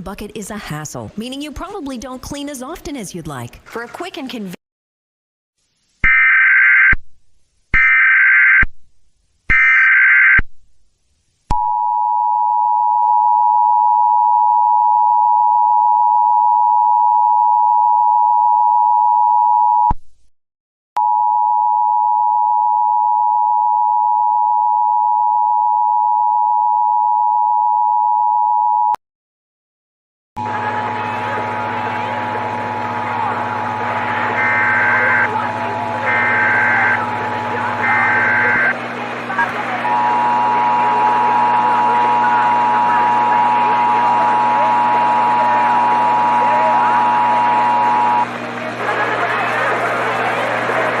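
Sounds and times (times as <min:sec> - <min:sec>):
screeching digital data bursts: 0:34.3 - 0:35.3, 0:37.8 - 0:38.8
two-tone attention signal: 0:34.3 - 0:35.4, 0:36.0 - 0:38.8, 0:39.4 - 0:48.3.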